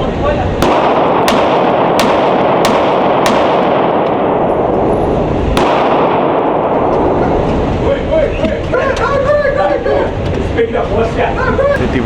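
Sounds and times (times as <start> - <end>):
pistol shots: 0.6 - 4.9, 5.5 - 7.2.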